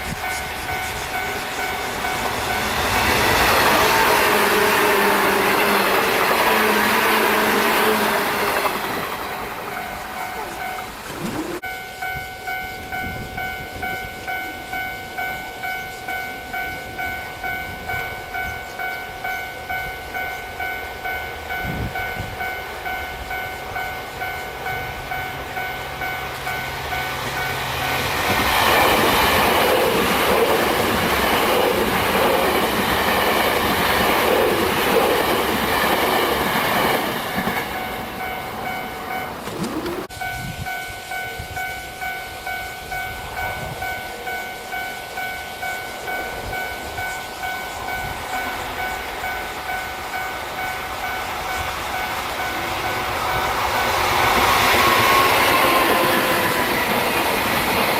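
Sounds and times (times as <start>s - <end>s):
level crossing alarm clanging: 0.0s - 57.9s
train passing with rail clatter: 0.0s - 57.9s.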